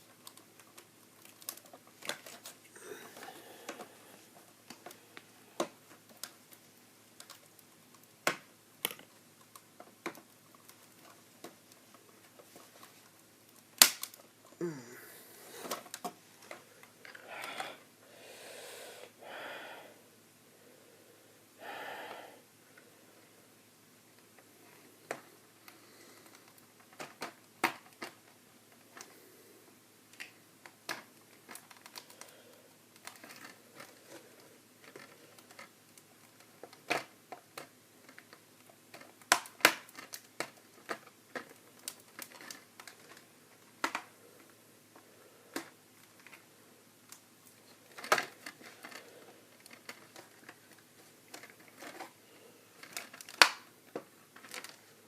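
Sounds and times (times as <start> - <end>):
plastic toy pieces clicking: 47.9 - 52.1, 52.8 - 53.7.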